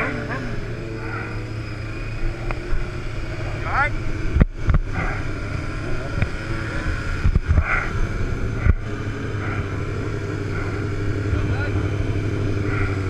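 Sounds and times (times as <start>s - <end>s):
motorcycle engine running: 0.0s - 13.0s
wind on microphone: 0.0s - 13.0s.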